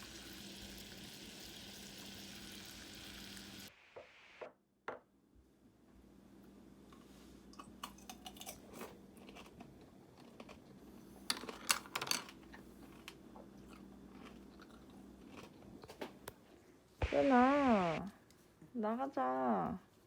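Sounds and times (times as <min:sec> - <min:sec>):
steady low hum: 0:17.0 - 0:18.2.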